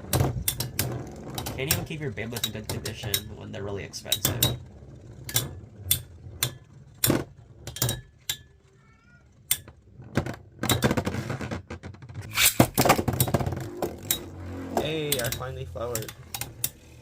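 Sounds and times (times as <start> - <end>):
spinning tops clashing: 12.2 - 17.0.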